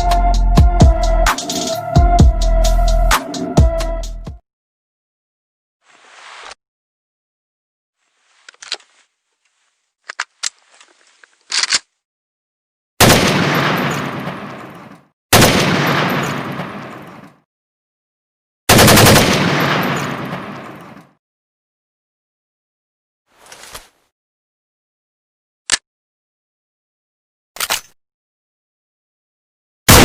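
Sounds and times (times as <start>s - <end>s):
gun mechanical clicks: 11.4s - 12.0s, 27.6s - 28.0s
automatic gunfire bursts: 15.4s - 16.1s, 18.7s - 20.3s.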